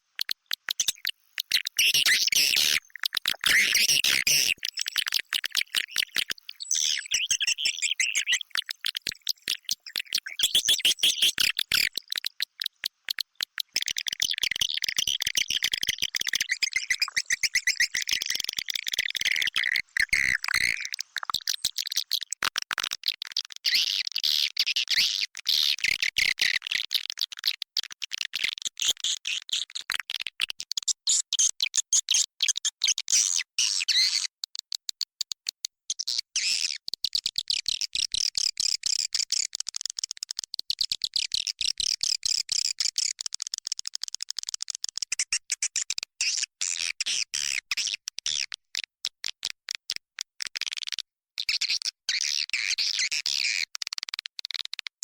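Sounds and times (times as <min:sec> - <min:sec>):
high twittering bird calls: 0:00.2 - 0:12.2, 0:16.0 - 0:21.9.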